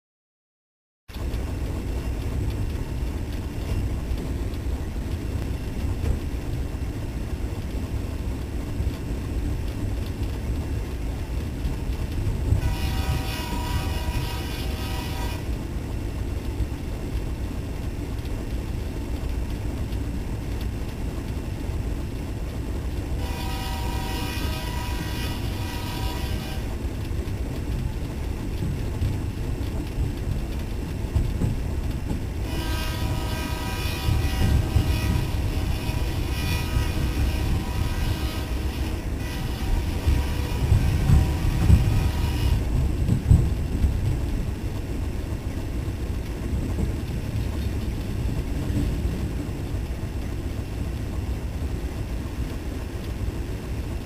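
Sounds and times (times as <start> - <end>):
train rumbling: 1.1 - 54.0
train horn blasts: 12.5 - 15.6, 23.1 - 26.8, 32.4 - 42.8.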